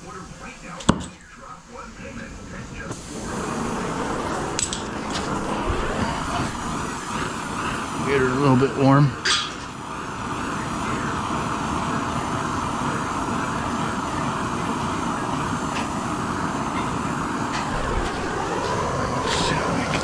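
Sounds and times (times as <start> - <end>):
gas torch flame burning: 0.0 - 20.0.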